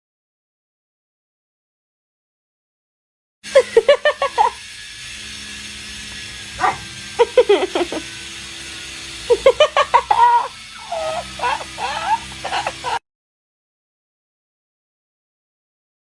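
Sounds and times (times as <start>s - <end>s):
dog barking: 6.6s - 6.9s.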